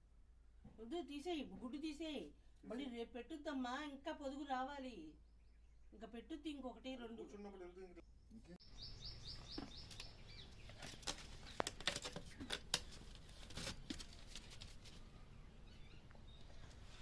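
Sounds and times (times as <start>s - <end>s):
small bird chirping: 7.4s - 13.0s, 15.0s - 17.0s.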